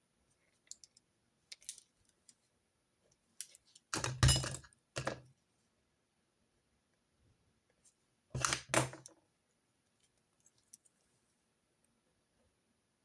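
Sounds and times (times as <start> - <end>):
objects clattering on desk: 3.9 - 5.2, 8.4 - 9.2.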